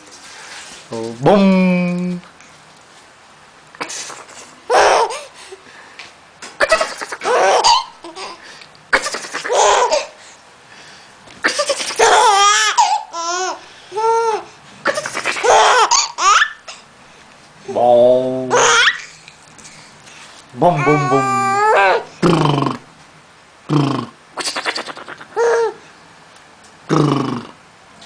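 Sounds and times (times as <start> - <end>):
baby laughing: 4.1 - 5.4, 6.5 - 10.2, 11.4 - 16.8, 18.5 - 19.1, 20.7 - 22.1, 24.4 - 25.8
adult making funny noises: 6.5 - 7.9, 8.9 - 10.1, 14.8 - 16.0, 18.4 - 19.0, 20.6 - 22.9, 23.7 - 25.8.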